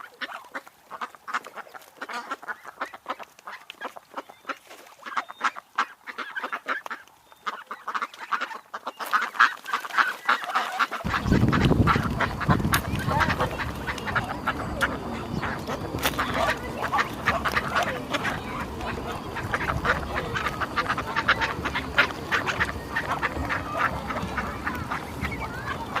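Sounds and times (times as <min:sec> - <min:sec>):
ducks quacking: 0:00.0 - 0:26.0
low rumbling noise: 0:11.0 - 0:26.0.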